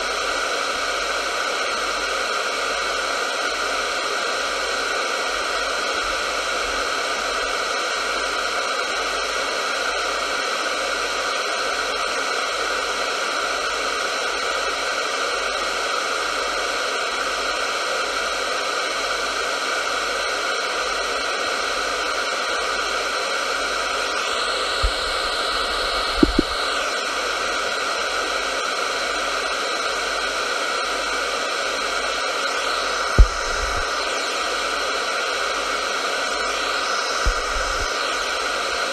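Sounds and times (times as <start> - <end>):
radio static hiss: 21.5 - 38.9
brief pops: 26.1 - 26.6.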